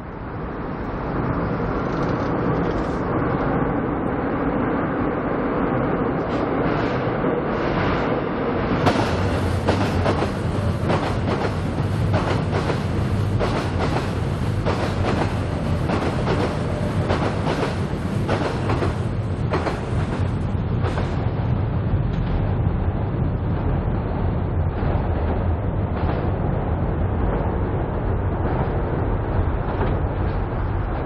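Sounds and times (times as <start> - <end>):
train low rumble: 0.0 - 31.0
train wheels clacking: 8.8 - 21.2.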